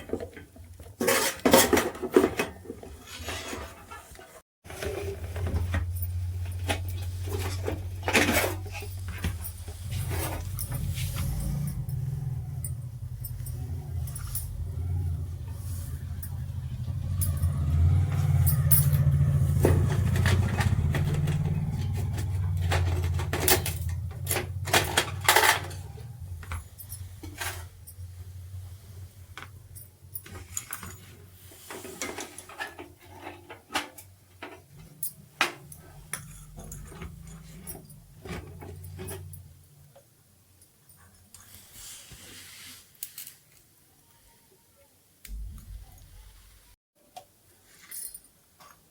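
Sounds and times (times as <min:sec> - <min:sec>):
metal parts and tools clinking: 0:04.7 - 0:39.7, 0:47.7 - 0:48.8
low hum: 0:08.7 - 0:30.7, 0:45.2 - 0:46.8.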